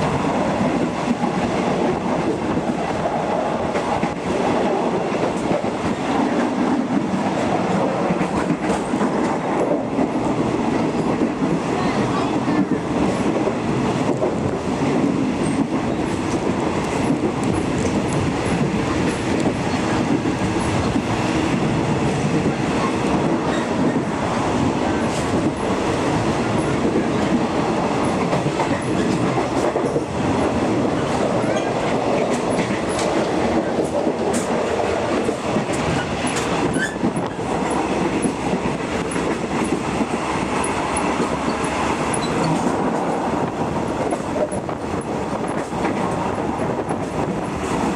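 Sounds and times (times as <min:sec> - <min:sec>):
train wheels on rail: 0:00.0 - 0:47.9.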